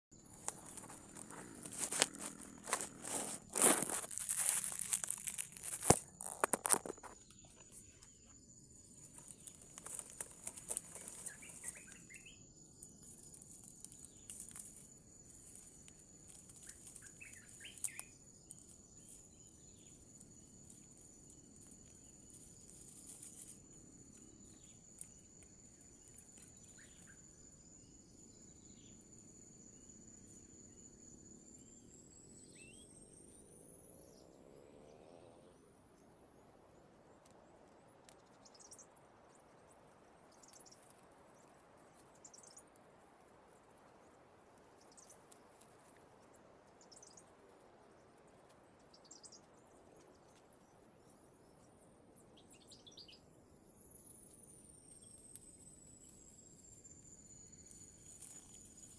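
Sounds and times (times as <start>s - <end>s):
high insect drone: 0.2s - 58.9s
leaves rustling: 0.3s - 7.9s, 9.1s - 12.3s, 12.9s - 19.9s, 20.6s - 25.1s
faint bird chirps: 6.9s - 58.9s.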